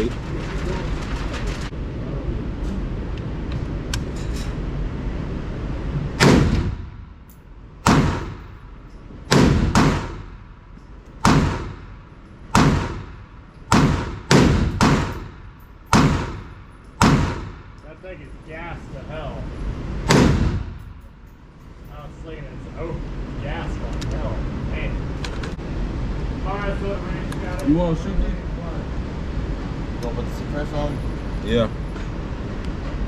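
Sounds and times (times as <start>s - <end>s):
gunshots with echo: 6.2s - 6.9s, 7.8s - 8.5s, 9.3s - 10.4s, 11.2s - 17.8s, 20.1s - 20.9s.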